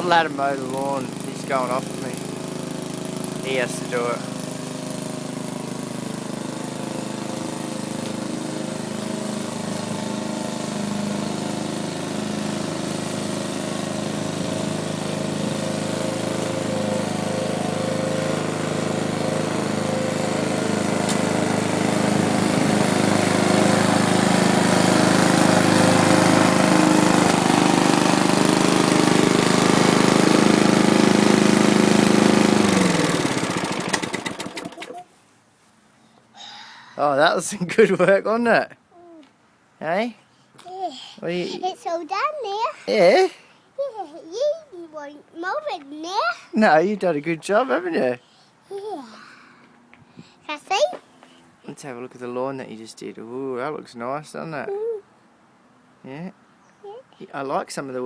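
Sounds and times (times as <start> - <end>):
lawn mower engine running: 0.0 - 35.1.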